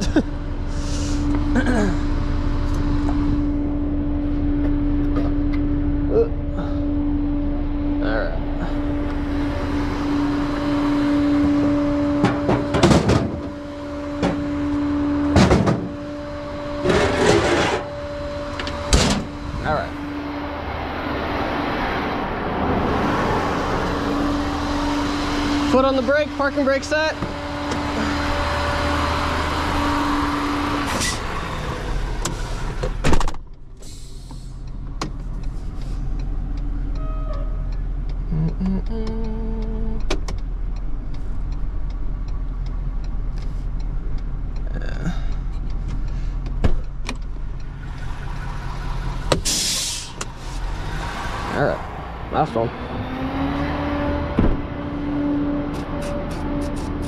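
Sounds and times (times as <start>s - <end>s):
truck engine humming: 0.0s - 57.0s
loud clunk: 12.2s - 13.6s, 15.3s - 16.0s, 16.8s - 17.9s, 18.6s - 19.3s.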